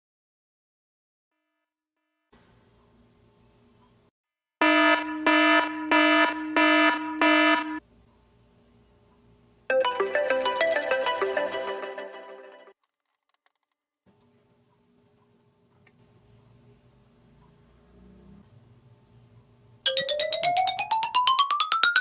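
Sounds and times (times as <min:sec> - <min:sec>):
bright melodic alarm notes: 0:04.6 - 0:07.8, 0:09.7 - 0:12.6, 0:19.9 - 0:22.0
loud alarm beeps: 0:04.6 - 0:07.8.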